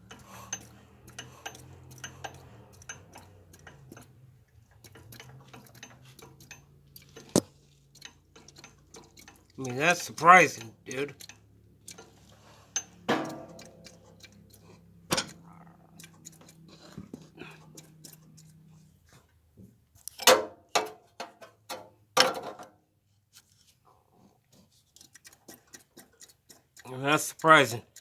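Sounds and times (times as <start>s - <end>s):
engine parts knocking and rattling: 0.0s - 9.5s.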